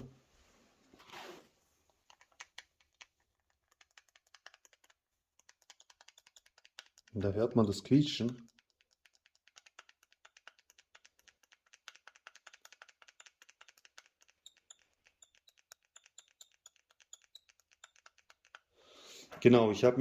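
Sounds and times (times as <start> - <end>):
camera mount clicking and squeaking: 12.4 - 18.6.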